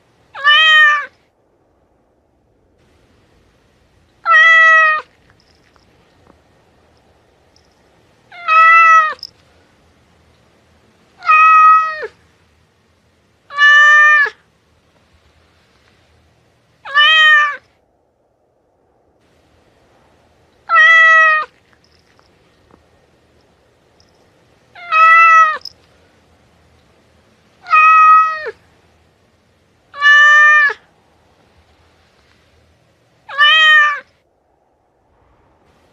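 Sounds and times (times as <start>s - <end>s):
cat meowing: 0.3s - 1.2s, 4.2s - 5.2s, 8.3s - 9.3s, 11.2s - 12.2s, 13.5s - 14.4s, 16.8s - 17.6s, 20.6s - 21.6s, 24.7s - 25.7s, 27.6s - 28.6s, 29.9s - 30.9s, 33.3s - 34.1s.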